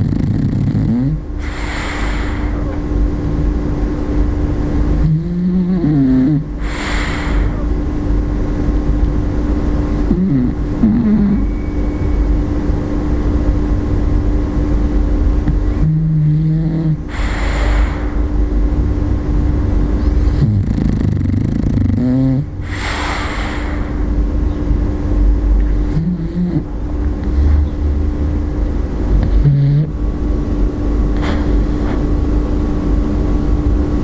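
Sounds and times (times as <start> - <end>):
dog snoring: 0.0 - 2.8, 4.9 - 7.8, 9.9 - 12.3, 15.4 - 18.3, 20.0 - 24.1, 25.4 - 30.1
wavering pitched snorts: 0.0 - 3.0, 5.0 - 7.9, 10.0 - 11.8, 15.7 - 18.5, 19.9 - 24.3, 25.2 - 30.1, 31.2 - 32.1
hissing rush of air: 1.3 - 4.7, 6.5 - 8.8, 17.0 - 19.8, 22.5 - 26.0.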